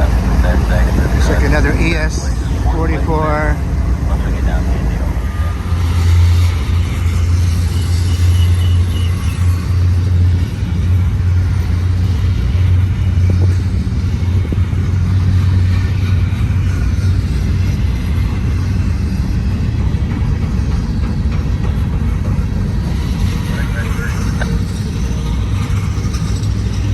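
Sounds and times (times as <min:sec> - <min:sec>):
locomotive engine drone: 0:00.0 - 0:26.9
train rumble: 0:00.0 - 0:26.9.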